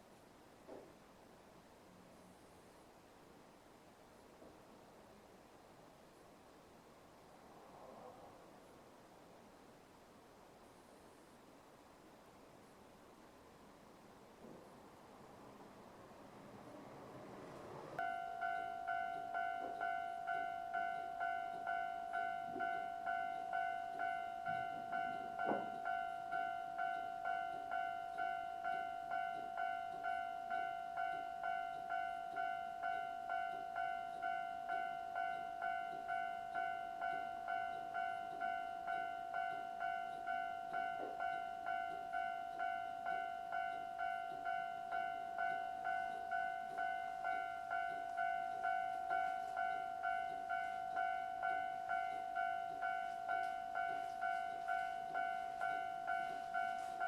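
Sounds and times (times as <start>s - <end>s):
electronic level crossing alarm: 18.0s - 57.0s.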